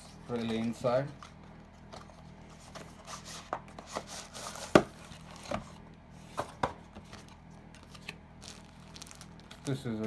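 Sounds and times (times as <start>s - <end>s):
packaging rustling: 7.8s - 9.9s.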